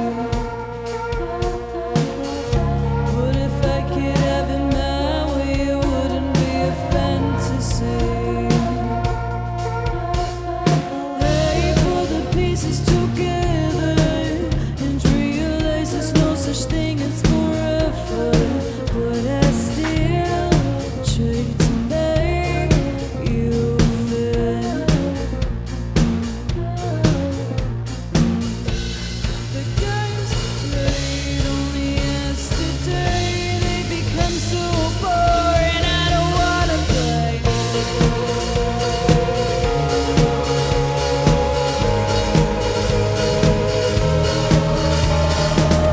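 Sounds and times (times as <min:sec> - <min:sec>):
person singing: 0:00.0 - 0:28.4, 0:29.5 - 0:45.9
drum kit beat: 0:00.0 - 0:45.9
held bass notes: 0:00.0 - 0:45.9
live rock band playing: 0:00.0 - 0:45.9
wavering melodic lead line: 0:33.0 - 0:45.9.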